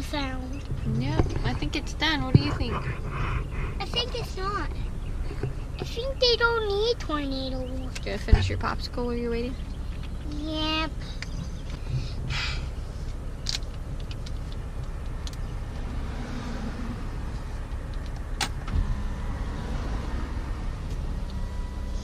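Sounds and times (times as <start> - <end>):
car engine idling: 0.0 - 22.0
faint steady tone: 18.8 - 22.0.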